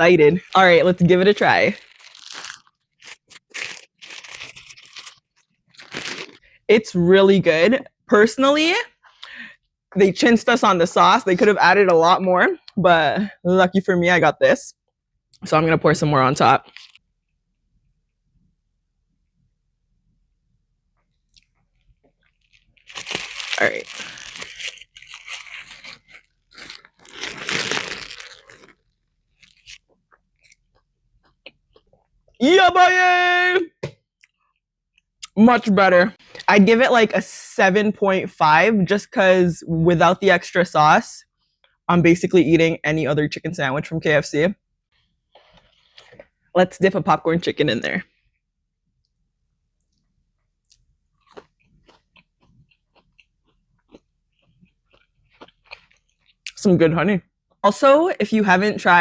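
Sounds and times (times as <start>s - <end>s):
crunching of crispy food: 1.4s - 6.6s, 16.6s - 17.0s, 21.3s - 32.4s, 49.8s - 56.6s
crunchy chewing: 16.6s - 17.0s, 50.6s - 56.5s.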